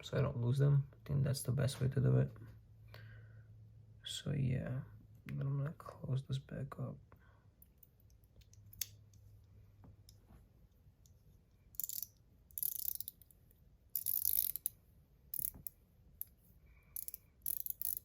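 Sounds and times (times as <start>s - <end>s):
rapid ratchet clicking: 11.8s - 13.2s, 14.0s - 14.7s, 15.3s - 15.7s, 17.0s - 18.0s.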